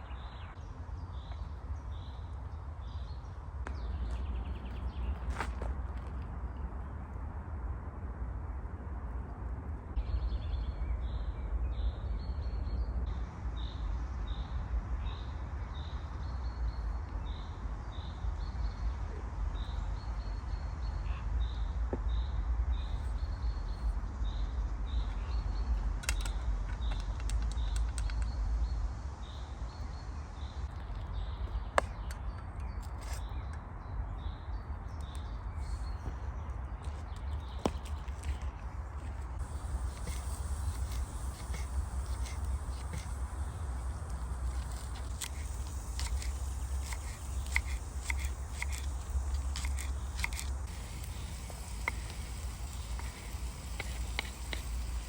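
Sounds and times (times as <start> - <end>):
sharp clicks: 26.0 - 28.4, 39.4 - 55.0.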